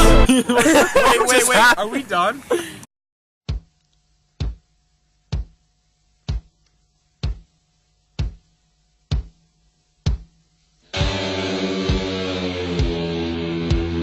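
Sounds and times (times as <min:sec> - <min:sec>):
kick drum thumping: 0:03.4 - 0:03.7, 0:04.4 - 0:04.6, 0:05.3 - 0:05.6, 0:06.3 - 0:06.5, 0:07.2 - 0:07.5, 0:08.2 - 0:08.4, 0:09.1 - 0:09.4, 0:10.0 - 0:10.3
faint steady hum: 0:03.6 - 0:10.9.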